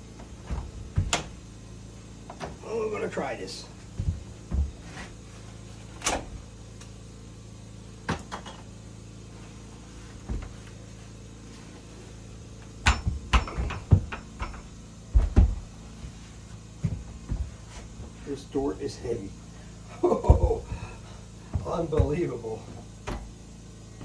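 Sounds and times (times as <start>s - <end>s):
wooden door knocks and thumps: 0.4s - 1.5s, 3.9s - 4.9s, 12.8s - 16.2s, 16.8s - 18.2s, 20.1s - 23.4s.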